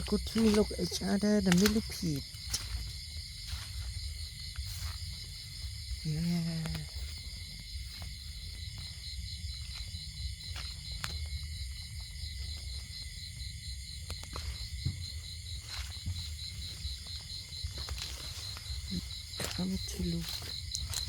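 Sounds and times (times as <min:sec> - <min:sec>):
crickets chirping: 0:00.0 - 0:21.0
sharp clicks: 0:01.4 - 0:02.1.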